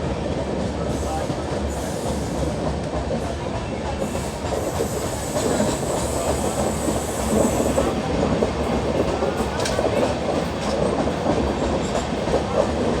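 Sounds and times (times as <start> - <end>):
passenger train rumbling: 0.0 - 13.0.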